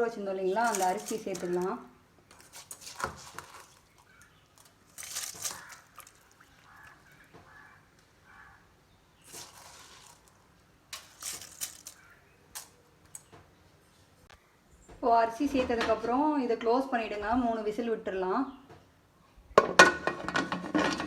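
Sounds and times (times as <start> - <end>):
rice tipped into pot scraping: 9.3 - 12.0, 19.6 - 21.0.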